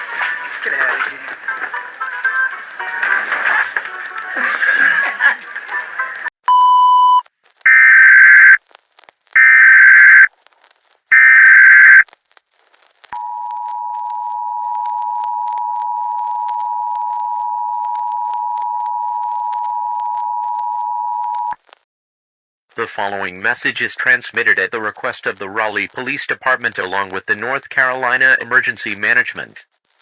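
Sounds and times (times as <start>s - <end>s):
short beep: 6.5s - 8.6s, 9.4s - 10.3s, 11.1s - 12.0s
two-tone attention signal: 6.5s - 8.6s, 9.4s - 10.3s, 11.1s - 12.0s
screechy data bursts: 7.7s - 8.6s, 9.4s - 10.3s, 11.1s - 12.0s.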